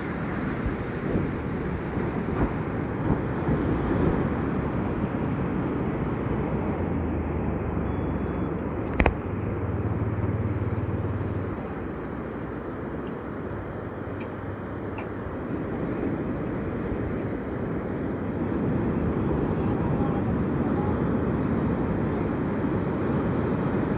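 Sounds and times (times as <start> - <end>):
waves breaking on beach: 0.0 - 23.9.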